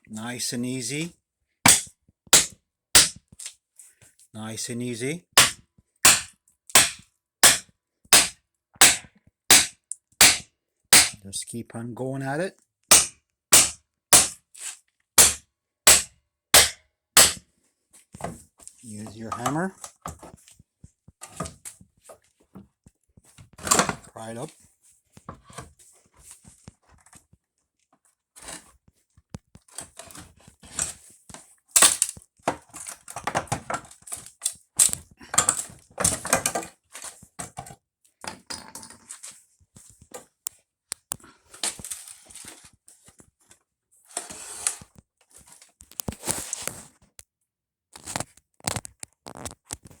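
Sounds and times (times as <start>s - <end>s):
wooden boards cracking: 1.7s - 3.2s, 5.4s - 7.6s, 8.2s - 10.4s, 11.0s - 11.2s, 12.9s - 14.3s.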